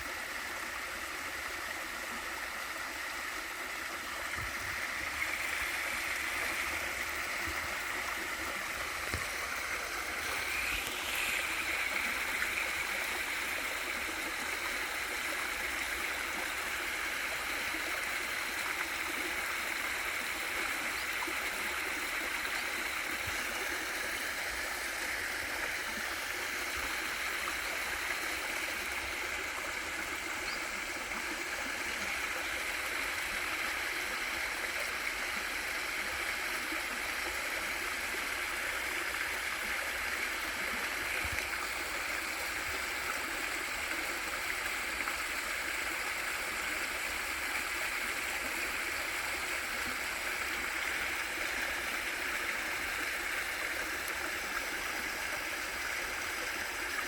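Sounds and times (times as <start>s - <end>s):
stream water rushing over waterfall: 0.0s - 57.0s.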